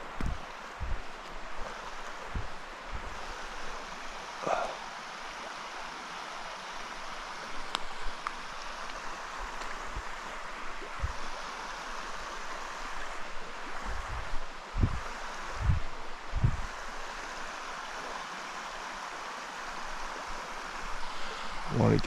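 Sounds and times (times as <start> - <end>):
soft low thumps: 0.0 - 1.1
stream rushing over rock: 0.0 - 22.0.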